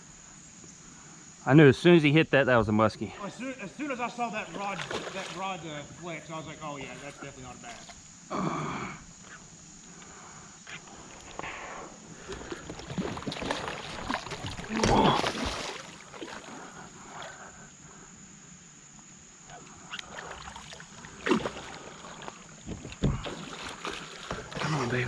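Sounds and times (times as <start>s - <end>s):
water splashing around a kayak: 4.4s - 6.0s, 12.0s - 17.6s, 19.8s - 25.0s
knocks on a kayak: 22.6s - 23.3s.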